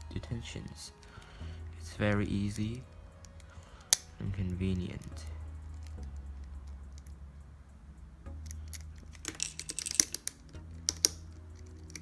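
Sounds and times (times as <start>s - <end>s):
low steady hum: 0.0s - 12.0s
plastic clicks of handling a cube: 8.4s - 12.0s.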